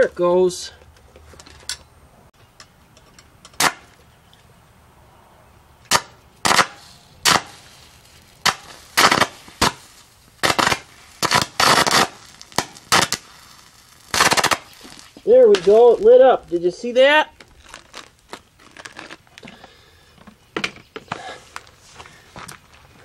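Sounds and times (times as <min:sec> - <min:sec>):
sharp cracks: 0:03.4 - 0:04.1, 0:05.8 - 0:19.5.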